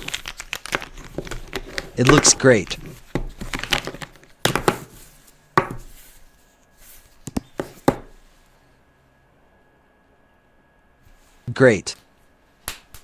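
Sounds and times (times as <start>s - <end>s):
plastic pens clicking and knocking: 0.0s - 2.9s.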